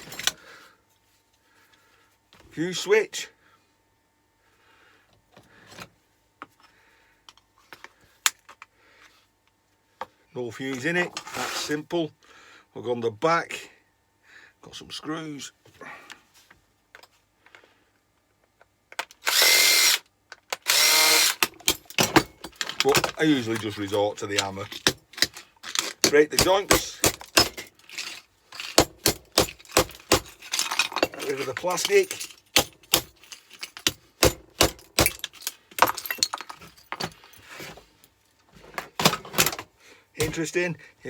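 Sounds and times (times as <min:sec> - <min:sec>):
cordless drill whirring: 0:19.2 - 0:20.0, 0:20.6 - 0:21.5.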